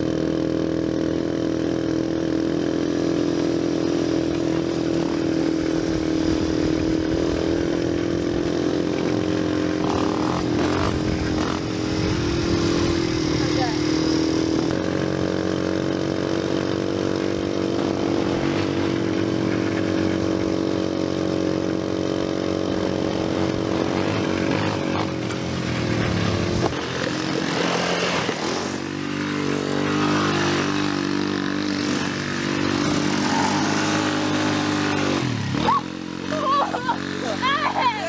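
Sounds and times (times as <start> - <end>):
atv engine running: 0.0 - 38.0.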